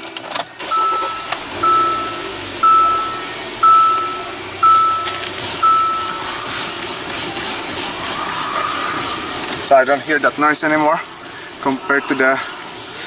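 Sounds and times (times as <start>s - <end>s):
faint low engine hum: 0.4s - 13.0s
dashboard warning chime beeping: 0.6s - 10.9s.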